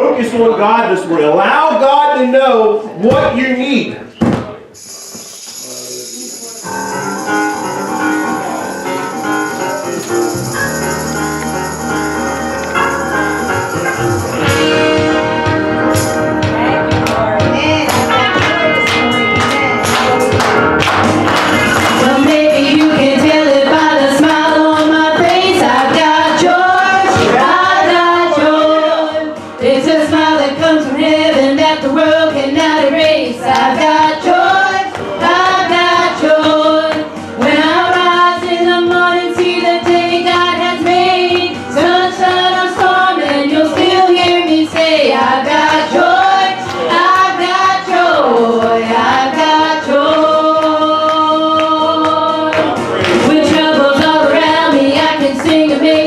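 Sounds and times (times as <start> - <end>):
musical backing: 0.0 - 56.0
women singing gospel: 21.8 - 56.0.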